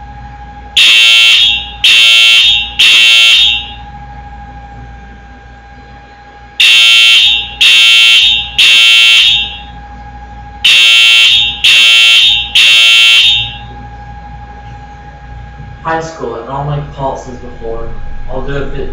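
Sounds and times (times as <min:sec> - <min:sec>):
buzzy fire alarm horn blasts: 0:00.7 - 0:04.0, 0:06.6 - 0:10.0, 0:10.6 - 0:13.9.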